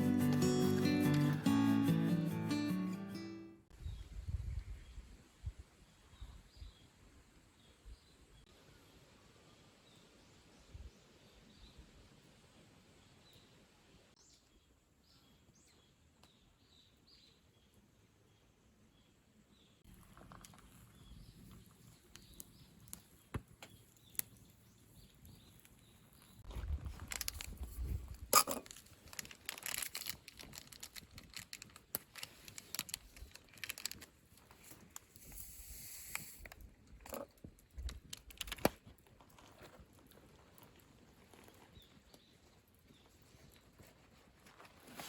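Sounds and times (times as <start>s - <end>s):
rustling and crinkling: 19.9s - 45.0s.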